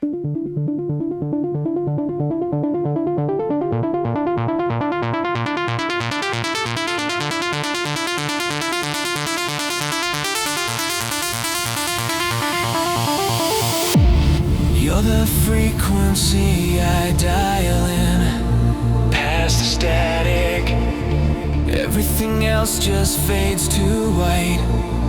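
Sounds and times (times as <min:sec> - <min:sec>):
synthesizer arpeggio: 0:00.0 - 0:14.9
pulsing bass line: 0:00.0 - 0:25.0.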